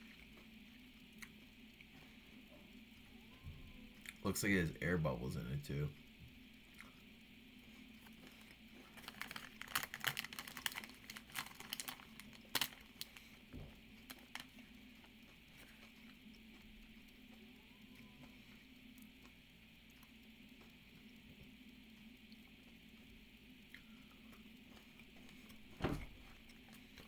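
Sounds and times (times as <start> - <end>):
faint steady hum: 0.0 - 27.0
chocolate bar wrapper crackling: 8.0 - 17.2.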